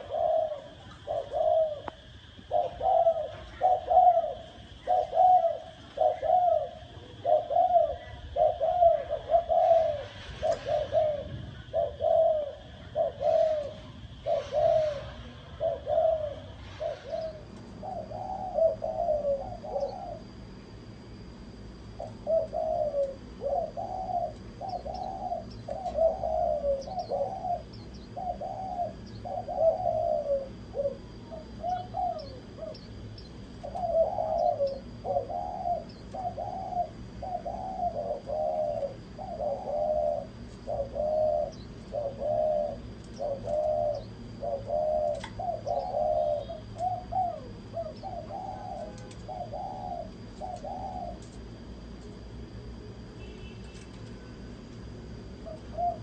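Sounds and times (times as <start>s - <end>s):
faint high bird chirps: 0.0s - 20.3s, 21.9s - 51.3s
doves cooing: 0.0s - 56.0s
thin steady high whine: 0.0s - 56.0s.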